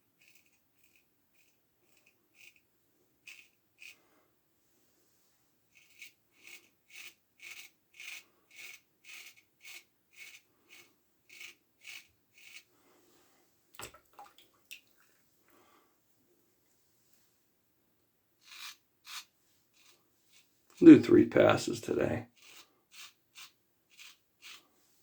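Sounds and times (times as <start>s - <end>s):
razor scraping stubble: 0.2s - 2.6s, 3.2s - 4.0s, 5.7s - 12.7s, 18.4s - 24.7s.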